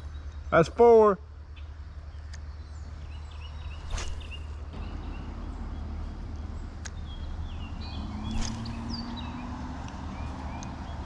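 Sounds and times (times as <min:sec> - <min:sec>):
small birds chirping: 0:00.0 - 0:11.0
steady low rumble: 0:01.2 - 0:11.0
sharp clicks: 0:06.8 - 0:07.0.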